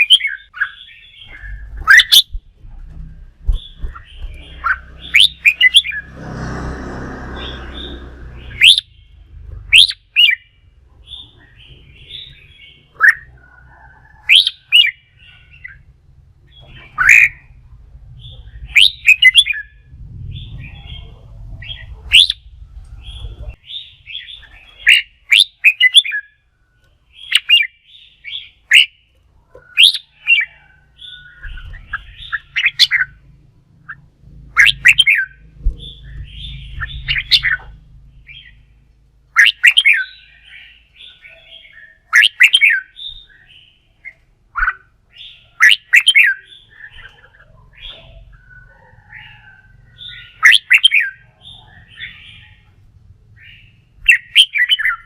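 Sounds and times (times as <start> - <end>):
bird whistled song: 0.0 - 2.4, 3.5 - 6.1, 7.4 - 10.5, 11.1 - 13.4, 14.2 - 15.8, 16.5 - 17.5, 18.2 - 26.4, 27.2 - 29.0, 29.6 - 33.2, 34.6 - 38.6, 39.4 - 52.6, 53.4 - 55.0
rushing noise: 4.8 - 8.7.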